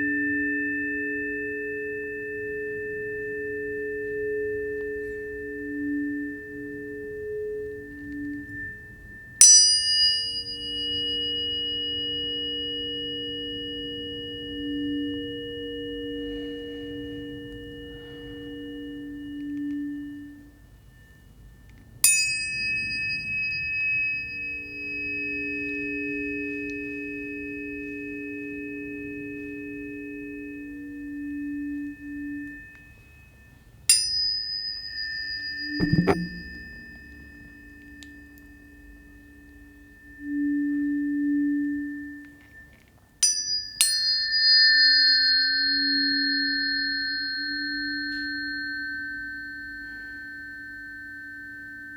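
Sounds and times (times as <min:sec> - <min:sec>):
low sustained pure tones: 0:00.0 - 0:22.0, 0:35.8 - 0:42.9
tuning fork ringing: 0:00.0 - 0:51.9.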